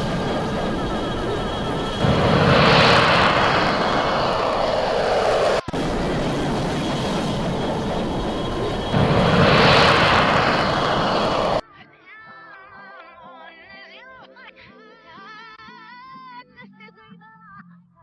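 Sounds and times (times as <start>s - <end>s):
jet aircraft engine roar: 0.0s - 11.6s.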